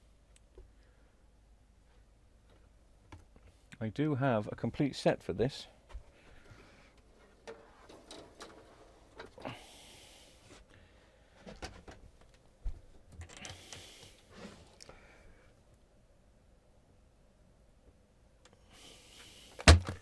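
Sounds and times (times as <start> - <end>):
sliding or rustling: 13.9 - 14.8.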